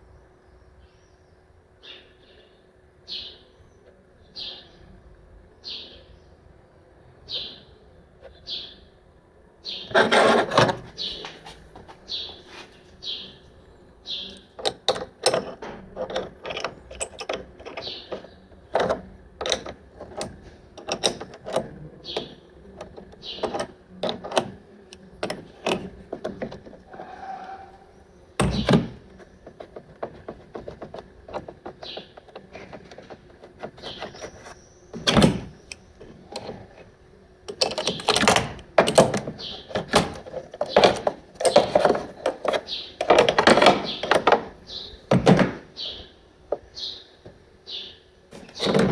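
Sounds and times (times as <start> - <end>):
objects clicking and clattering: 14.5 - 21.7.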